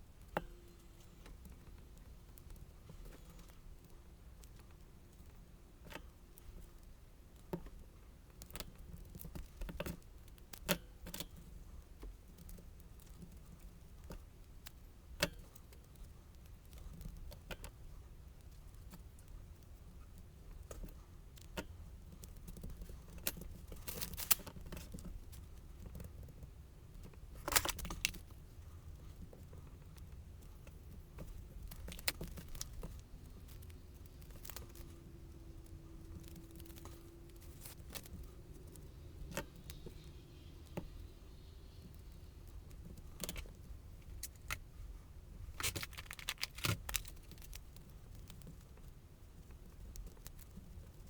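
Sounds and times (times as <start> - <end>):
paper handled: 45.6 - 47.6.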